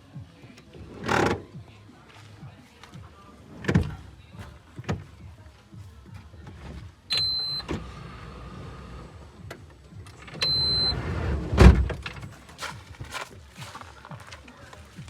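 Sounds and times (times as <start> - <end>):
high electronic beeps: 7.1 - 7.7, 10.4 - 11.0.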